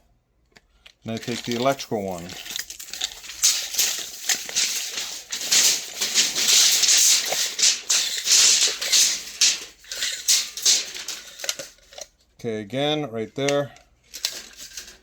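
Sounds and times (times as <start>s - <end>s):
tape measures rattling and clicking: 1.1s - 12.1s, 14.1s - 15.0s.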